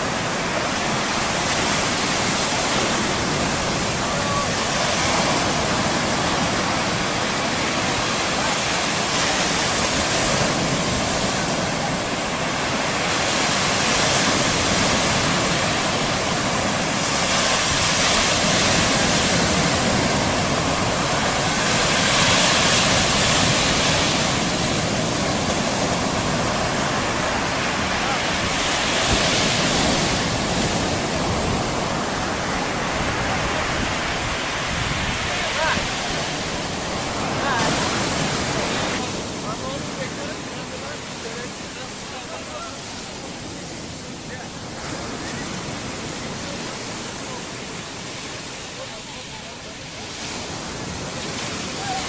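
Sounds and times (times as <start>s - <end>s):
waves washing up a sandy beach: 0.0s - 52.0s.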